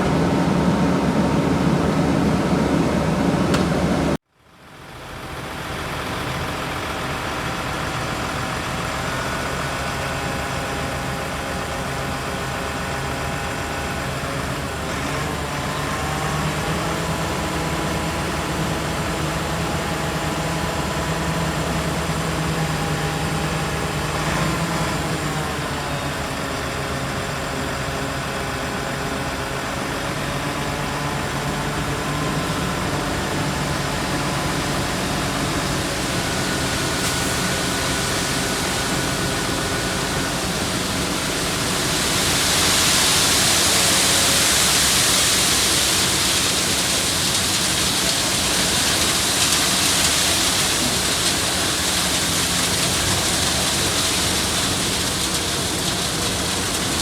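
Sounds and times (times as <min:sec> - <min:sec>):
heavy machinery engines running: 0:00.0 - 0:57.0
loud steady hiss: 0:35.1 - 0:57.0.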